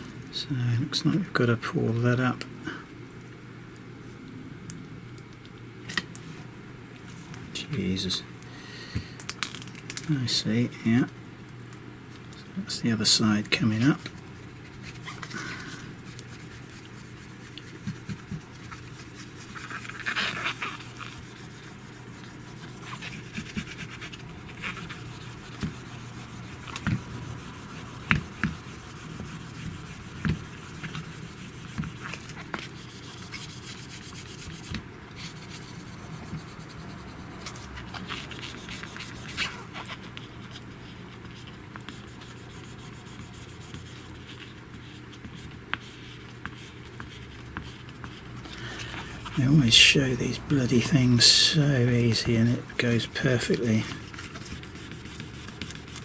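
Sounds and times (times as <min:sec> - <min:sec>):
steady low hum: 0:00.0 - 0:56.0
fingers rubbing plastic film: 0:16.0 - 0:52.2, 0:53.0 - 0:56.0.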